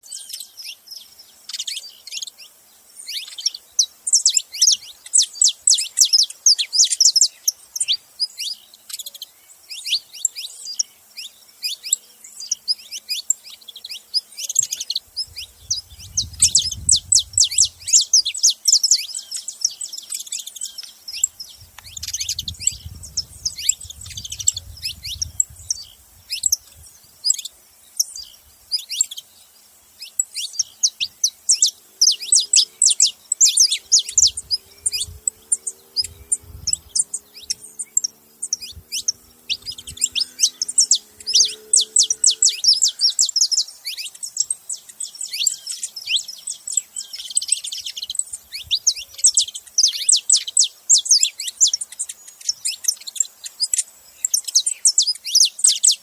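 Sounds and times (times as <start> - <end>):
finches chirping: 0.0 - 56.0
faint low rumble: 15.1 - 18.0, 21.4 - 27.0, 33.9 - 42.8.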